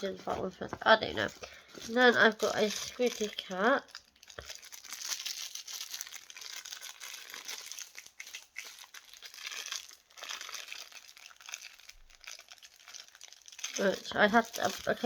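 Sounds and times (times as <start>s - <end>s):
plastic crinkling: 0.0s - 15.0s.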